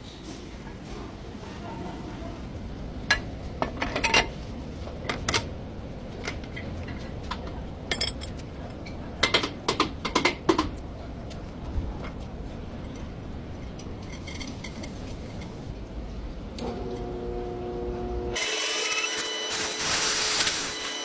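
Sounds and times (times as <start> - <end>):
metal tools clinking and clanking: 3.1 - 4.4, 6.2 - 9.6, 13.7 - 15.6.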